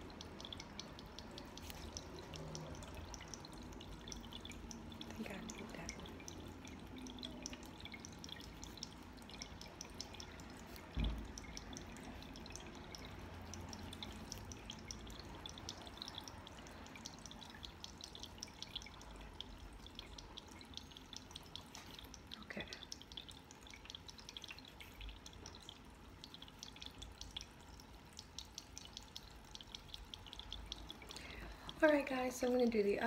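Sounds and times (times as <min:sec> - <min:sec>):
quick water drips: 0:00.0 - 0:33.0
tabletop water fountain trickling: 0:00.0 - 0:33.0
thump: 0:11.0 - 0:11.3.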